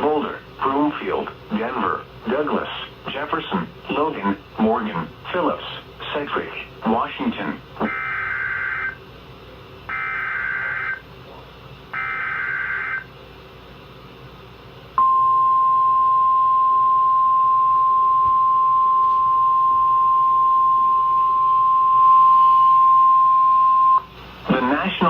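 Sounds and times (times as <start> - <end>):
steady warning tone: 3.2 - 6.3, 7.8 - 9.0, 9.9 - 11.1, 11.9 - 13.1, 15.0 - 25.0.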